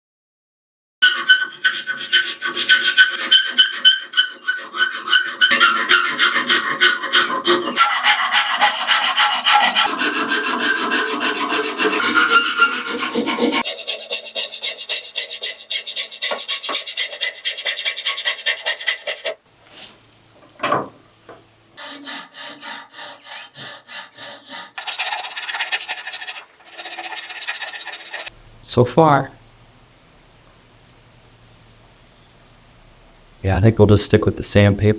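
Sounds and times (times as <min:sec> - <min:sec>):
abrasive scraping on wood: 0:13.6 - 0:19.4, 0:24.8 - 0:28.3.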